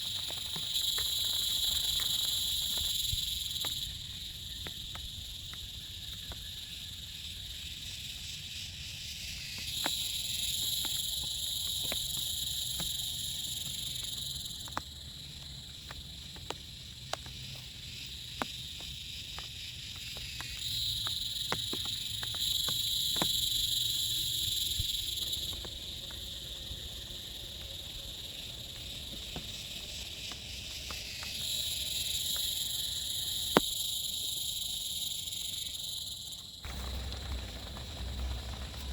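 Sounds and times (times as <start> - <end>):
insect trilling: 0.0 - 38.9
sharp ticks: 18.4 - 26.2.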